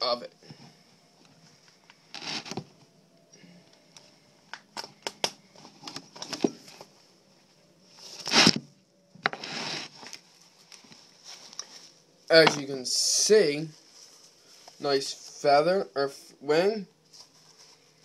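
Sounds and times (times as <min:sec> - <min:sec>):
tearing rasp: 0:09.3 - 0:10.2.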